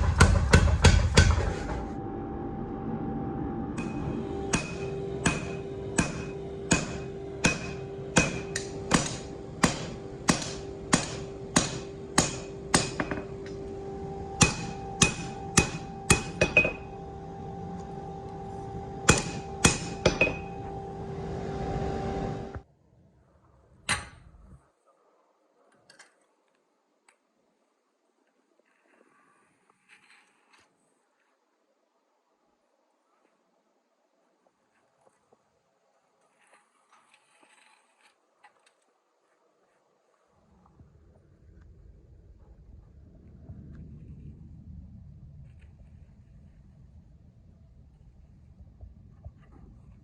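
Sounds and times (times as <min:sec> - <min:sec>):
steady hum: 0:00.0 - 0:22.7
hammer blows on steel: 0:03.8 - 0:22.6
metal clank: 0:19.1 - 0:20.7.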